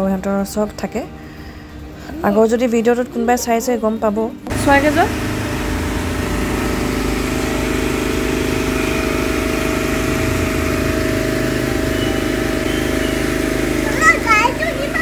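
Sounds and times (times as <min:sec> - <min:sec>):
generator engine humming: 0:04.4 - 0:15.0.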